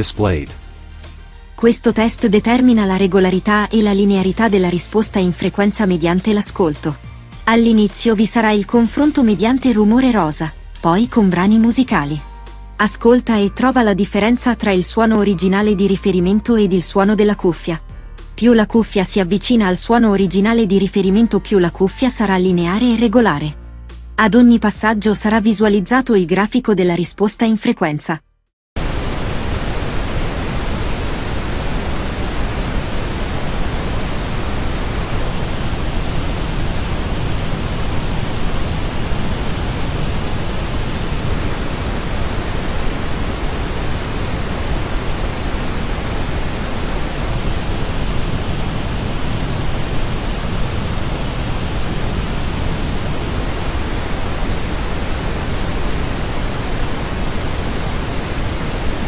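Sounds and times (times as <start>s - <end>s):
pink noise hiss: 0.0s - 7.6s, 28.8s - 59.0s.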